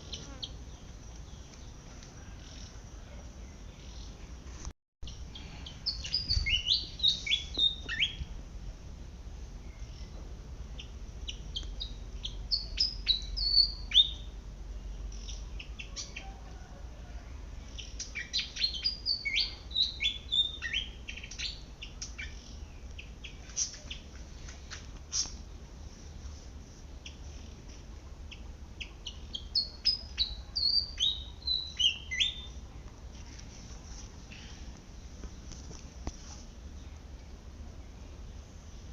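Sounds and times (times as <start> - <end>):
bird chirps: 5.1 - 8.3, 9.6 - 16.3, 17.7 - 24.1, 28.3 - 32.6.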